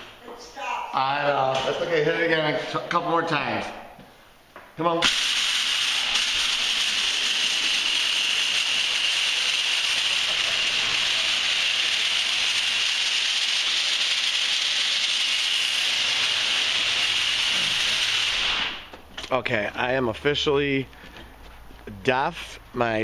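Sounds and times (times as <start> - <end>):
garage door opener screechy hiss: 5.0 - 18.9.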